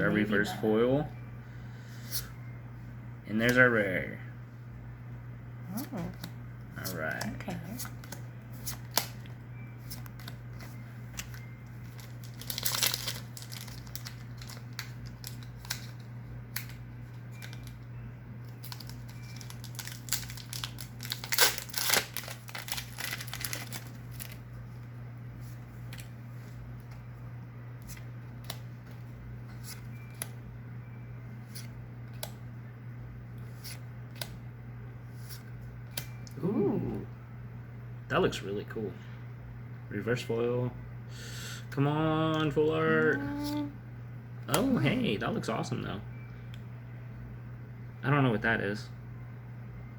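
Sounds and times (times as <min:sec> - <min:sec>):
foil pack crinkling and tearing: 0:11.2 - 0:16.8, 0:18.6 - 0:24.5.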